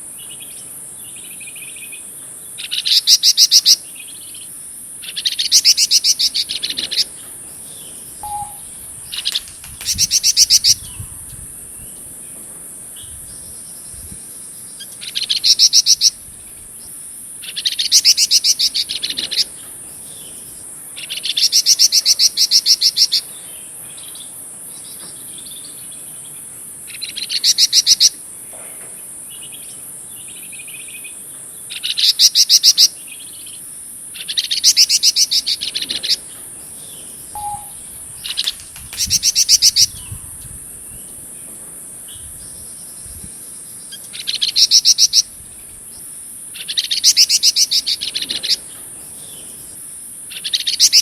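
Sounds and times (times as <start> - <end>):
high insect buzz: 4.6 - 19.5, 33.8 - 49.0
songbird rattling trill: 5.0 - 16.7, 17.4 - 20.5, 34.2 - 45.7, 46.6 - 49.6
soft bird warbling: 8.2 - 11.1, 37.4 - 40.1.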